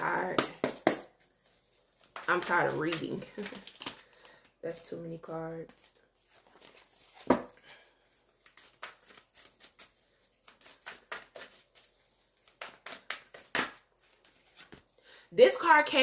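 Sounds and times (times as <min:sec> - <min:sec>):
cards shuffled by hand: 0:02.0 - 0:04.4, 0:08.4 - 0:14.8.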